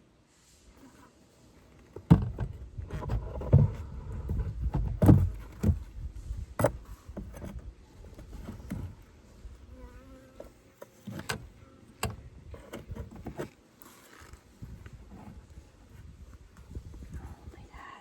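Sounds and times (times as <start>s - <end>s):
beehive frames knocking and scraping: 1.6s - 17.8s
low rumbling handling noise: 1.6s - 17.8s.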